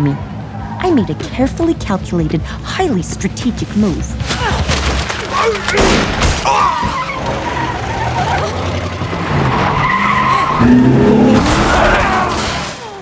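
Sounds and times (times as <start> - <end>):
tires squealing: 0.0 - 1.2, 4.2 - 13.0
car engine running hard: 6.6 - 13.0.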